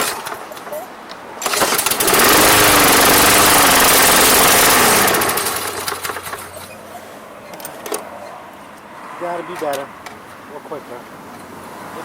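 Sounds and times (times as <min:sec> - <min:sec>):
lawn mower engine running: 0:01.4 - 0:08.1.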